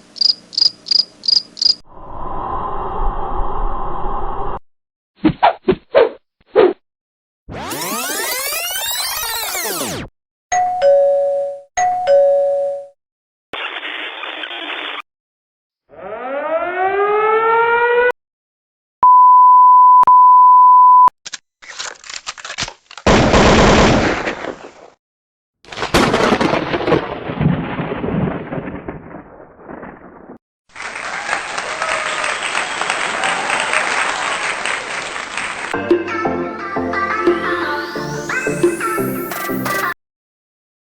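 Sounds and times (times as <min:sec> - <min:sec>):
censor beep: 0:19.0 - 0:21.1.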